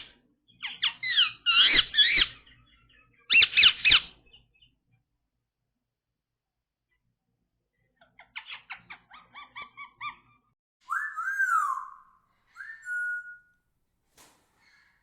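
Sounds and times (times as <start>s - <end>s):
parakeet whistle: 10.8s - 13.5s.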